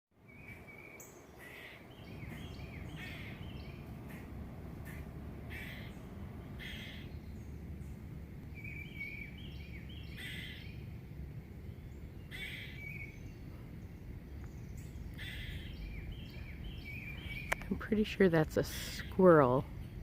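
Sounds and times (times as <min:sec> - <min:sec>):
low outdoor rumble: 0:00.2 - 0:20.0
squirrel calling: 0:00.3 - 0:10.8, 0:11.8 - 0:13.4, 0:14.4 - 0:19.7.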